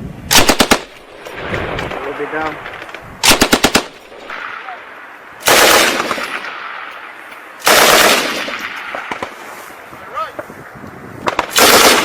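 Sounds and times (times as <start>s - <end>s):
machine gun bursts with echo: 0.3s - 4.6s, 5.4s - 6.6s, 7.6s - 9.3s, 11.3s - 12.0s.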